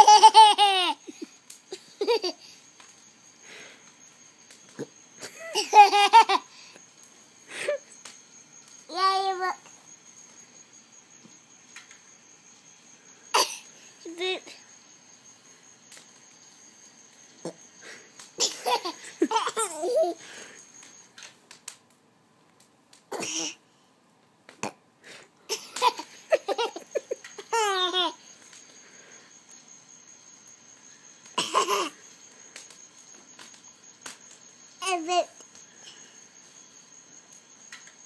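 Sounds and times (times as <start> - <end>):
toddler laughing and giggling: 0.0 - 2.5, 5.2 - 6.5, 18.4 - 20.2, 25.5 - 28.2, 31.4 - 32.0.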